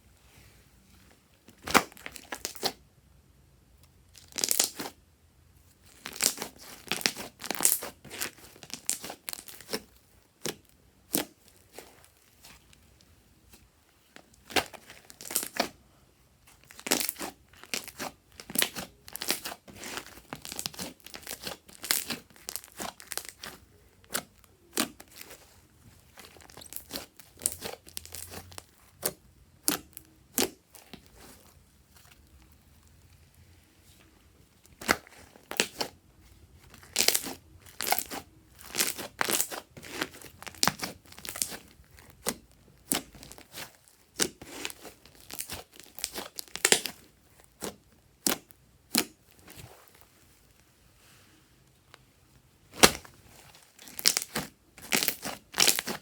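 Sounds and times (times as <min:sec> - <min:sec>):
slime crackling and popping: 0:01.6 - 0:02.8, 0:04.2 - 0:05.0, 0:05.9 - 0:11.9, 0:14.4 - 0:15.8, 0:16.6 - 0:33.3, 0:34.6 - 0:36.0, 0:36.6 - 0:50.0, 0:52.7 - 0:56.0.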